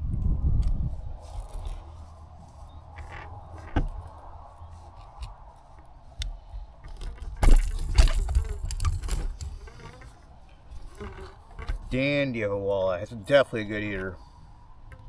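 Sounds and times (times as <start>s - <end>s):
fishing gear clicks and knocks: 6.8s - 10.2s.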